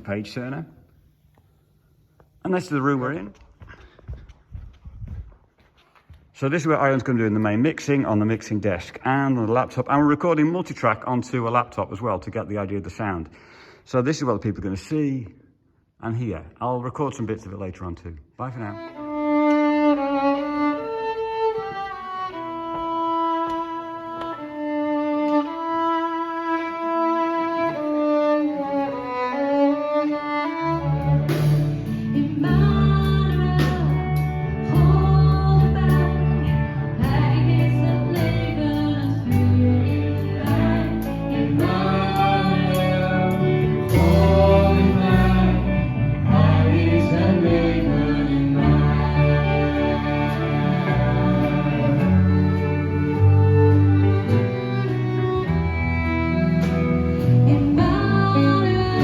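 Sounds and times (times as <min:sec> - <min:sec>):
bowed strings: 0:18.6 - 0:59.0
live band playing: 0:26.5 - 0:59.0
person singing: 0:30.1 - 0:55.5, 0:57.2 - 0:59.0
bass and drums: 0:30.9 - 0:59.0.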